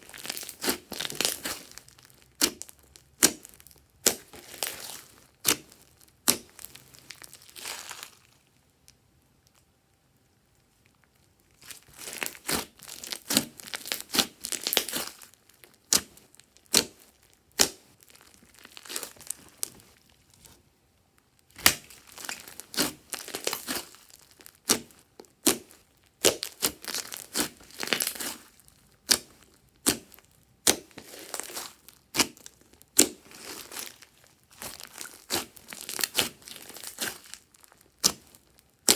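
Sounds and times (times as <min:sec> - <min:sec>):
slime crackling with popping clicks: 0:00.2 - 0:07.4, 0:29.0 - 0:38.9.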